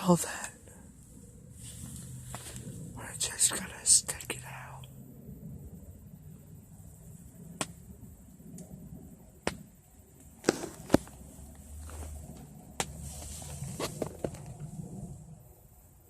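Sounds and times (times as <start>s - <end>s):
faint low rumble: 0.0s - 16.0s
sharp taps and clicks: 7.6s - 7.8s, 9.4s - 11.0s, 12.8s - 13.0s.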